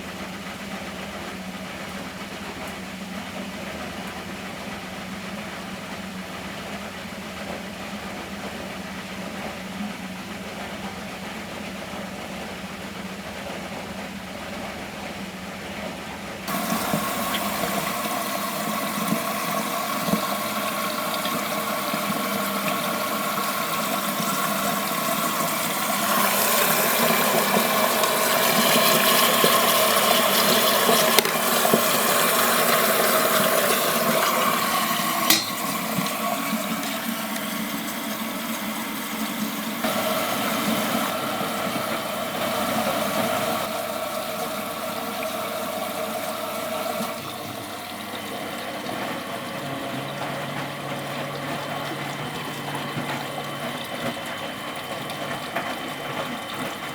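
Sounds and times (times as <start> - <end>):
washing machine mechanical hum: 0.0 - 56.9
water rushing and sloshing: 16.4 - 56.9.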